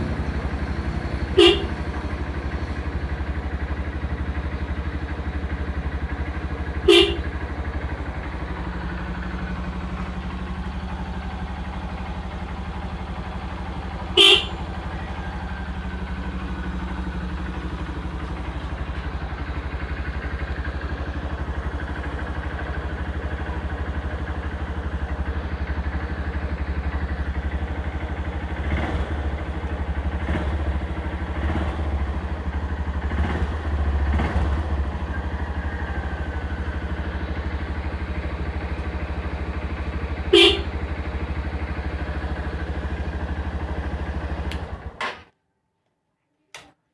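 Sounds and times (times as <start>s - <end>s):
motorcycle engine idling: 0.0s - 45.3s
car horn honks: 1.3s - 1.8s, 6.8s - 7.4s, 14.1s - 14.7s, 40.2s - 40.8s.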